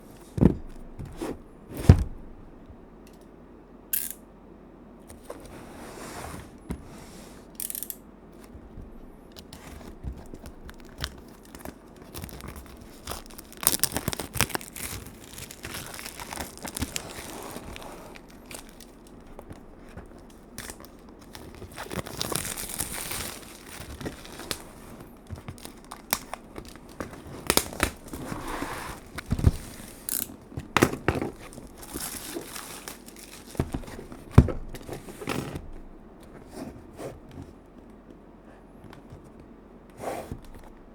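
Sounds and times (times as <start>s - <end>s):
wrapping crinkling and tearing: 10.1s - 30.4s, 31.3s - 34.2s.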